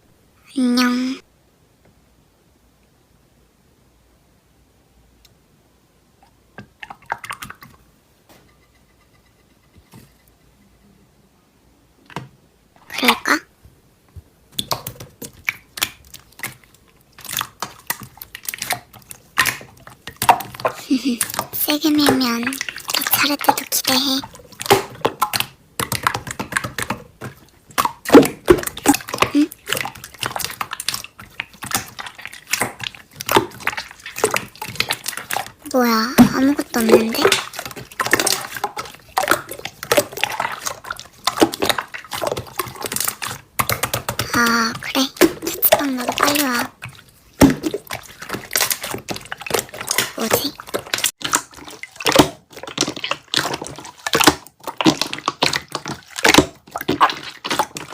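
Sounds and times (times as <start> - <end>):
slime squished by hand: 14.5 - 57.9.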